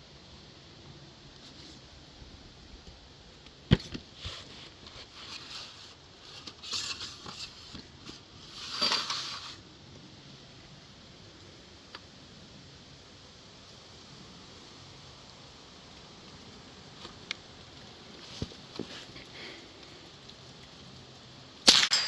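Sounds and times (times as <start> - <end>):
rustling: 0.9 - 9.7, 16.3 - 22.0
rifle shot: 21.7 - 22.0.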